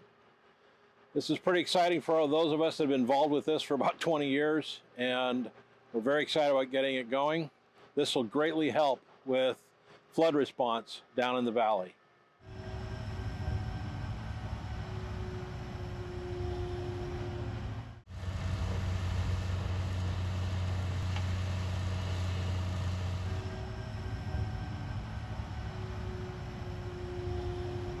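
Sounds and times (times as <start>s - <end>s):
construction machinery engine rumble: 12.6s - 28.0s.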